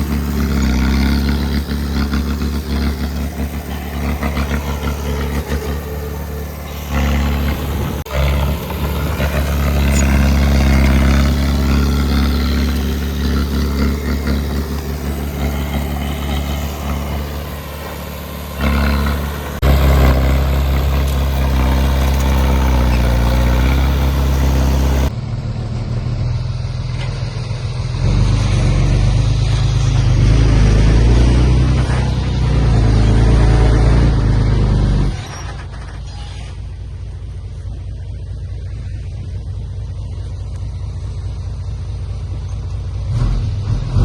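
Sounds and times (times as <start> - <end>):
heavy machinery diesel engines: 0.0 - 44.0.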